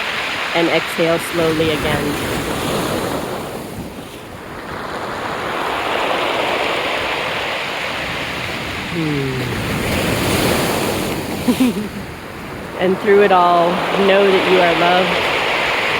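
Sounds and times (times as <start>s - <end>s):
sea waves washing ashore: 0.0s - 15.9s
low falling voice: 8.9s - 9.9s, 11.5s - 12.1s.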